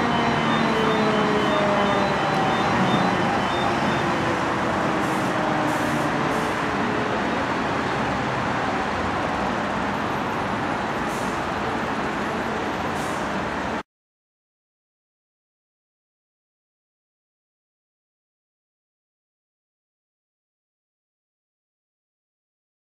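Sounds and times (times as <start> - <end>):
motor siren winding down: 0.0 - 6.8
traffic noise: 0.0 - 13.8.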